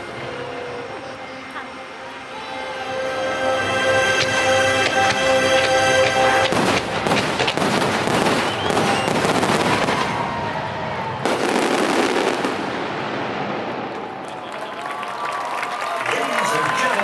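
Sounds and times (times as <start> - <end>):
orchestral chord: 0.0 - 7.7
fireworks launching and crackling: 4.2 - 14.8.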